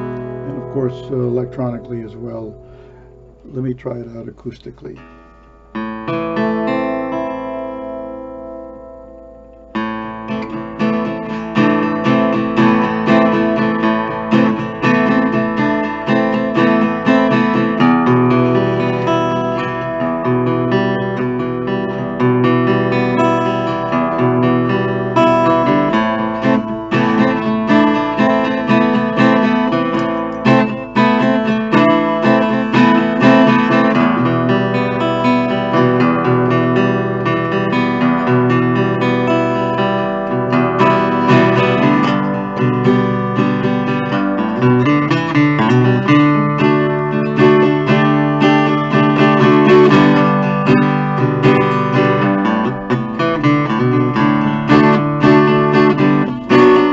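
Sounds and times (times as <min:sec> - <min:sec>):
acoustic guitar strummed with pick: 0:00.0 - 0:56.9.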